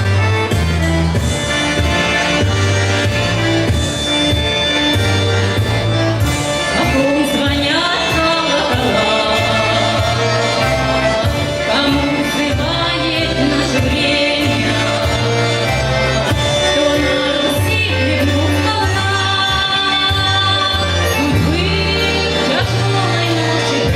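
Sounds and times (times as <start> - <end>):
instrumental accompaniment: 0.0 - 23.9
folk ensemble singing: 7.6 - 23.9.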